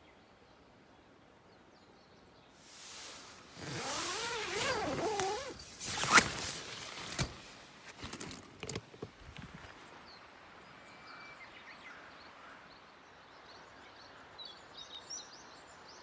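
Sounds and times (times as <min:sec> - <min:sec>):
zipper pulled open: 0:02.6 - 0:09.8
light clicks and knocks: 0:07.0 - 0:09.9.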